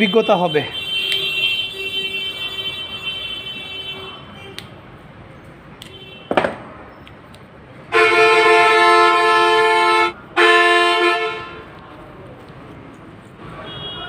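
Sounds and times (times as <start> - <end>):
vehicle horn blasts: 7.9 - 11.6, 13.6 - 14.0.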